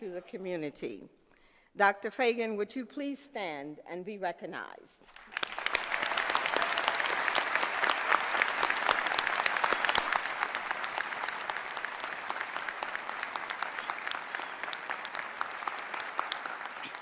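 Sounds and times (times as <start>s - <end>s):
audience applauding: 5.1s - 17.0s.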